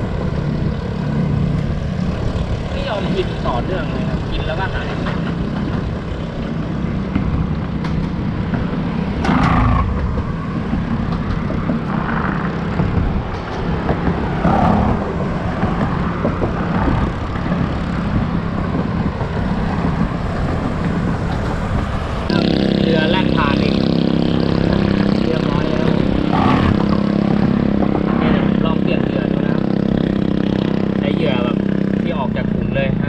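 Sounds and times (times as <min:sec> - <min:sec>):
wind buffeting microphone: 0:05.2 - 0:22.3.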